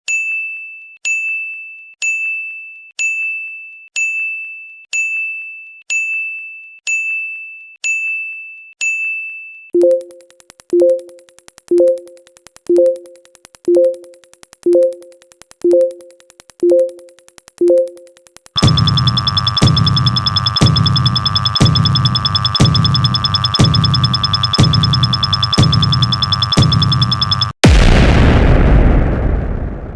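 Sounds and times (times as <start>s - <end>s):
fast ticking: 9.8s - 27.6s
dense synthesizer music: 16.6s - 27.5s.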